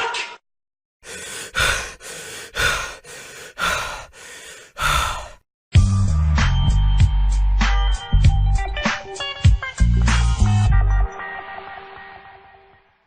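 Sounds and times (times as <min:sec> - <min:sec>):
person breathing heavily: 0:01.0 - 0:05.5
bass-heavy music: 0:05.8 - 0:11.2.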